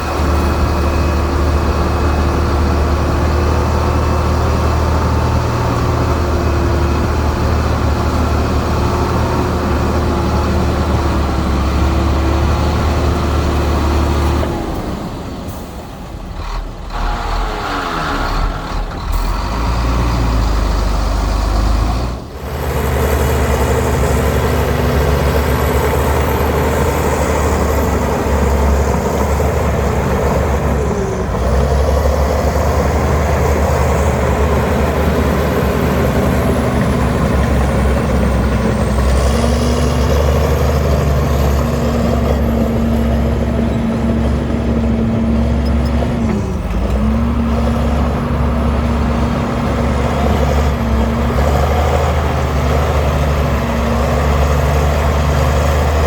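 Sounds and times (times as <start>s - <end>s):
heavy diesel engine running: 0.0s - 56.0s.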